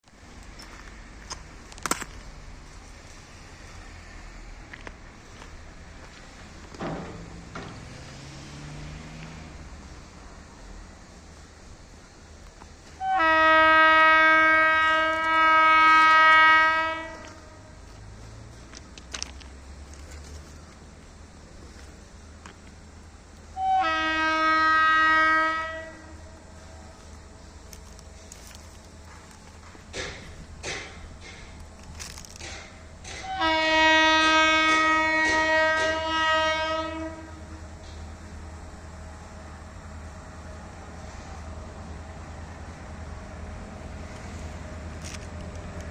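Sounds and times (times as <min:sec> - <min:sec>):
train wheels clacking over rail joints: 0:04.7 - 0:08.4, 0:14.3 - 0:22.8, 0:26.0 - 0:37.1, 0:37.8 - 0:38.3
locomotive air horn blast: 0:12.9 - 0:17.8, 0:23.5 - 0:26.9, 0:33.2 - 0:37.7.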